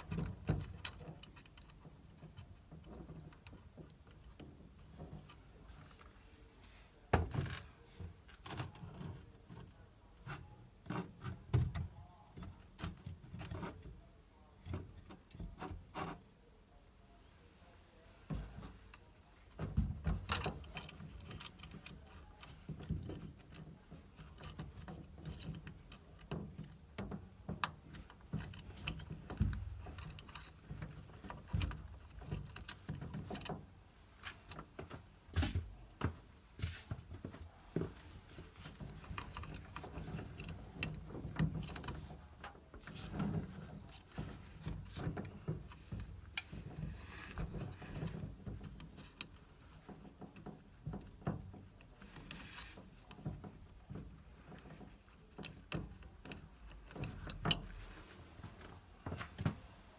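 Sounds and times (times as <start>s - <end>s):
tools clicking and tapping: 37.8s - 57.8s.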